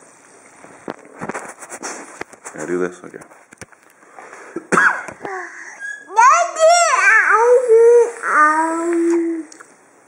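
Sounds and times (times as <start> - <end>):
child's sliding vocal sound: 5.8 - 9.6.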